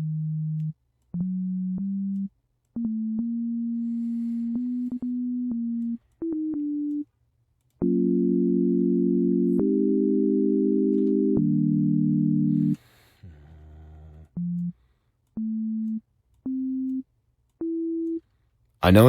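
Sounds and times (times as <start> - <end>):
synthesizer chord: 0.0 - 7.0, 7.8 - 12.8, 14.4 - 14.8, 15.4 - 17.0
synthesizer notes: 0.0 - 7.0, 7.8 - 12.8, 14.3 - 14.8.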